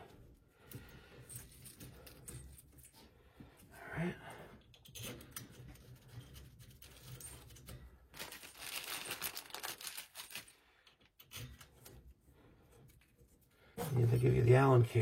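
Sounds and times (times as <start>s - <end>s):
crinkling and scraping handling: 0.0s - 3.8s, 4.4s - 15.0s.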